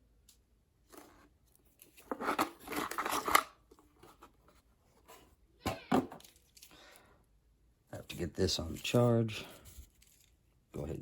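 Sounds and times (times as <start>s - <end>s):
packaging rustling and scraping: 0.9s - 5.4s, 8.1s - 10.4s.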